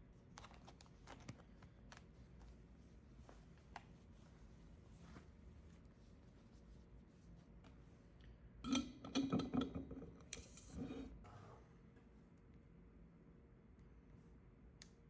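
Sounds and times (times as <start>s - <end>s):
objects clicking and knocking: 8.7s - 10.9s.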